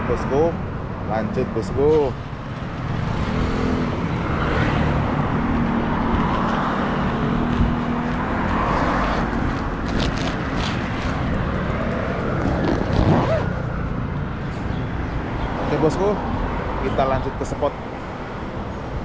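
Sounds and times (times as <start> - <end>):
traffic: 0.0 - 19.0
engine hum: 1.6 - 15.4.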